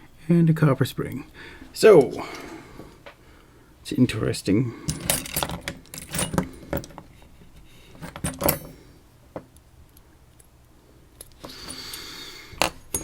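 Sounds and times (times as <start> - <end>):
small metal parts clinking: 4.8 - 7.1, 7.9 - 8.8, 11.2 - 13.0.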